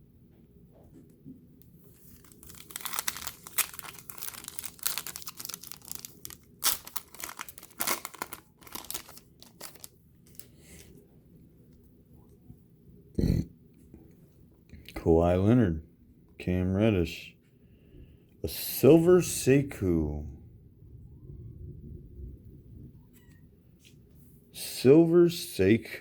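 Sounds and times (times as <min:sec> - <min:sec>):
wrapper tearing and crinkling: 0:01.9 - 0:10.8.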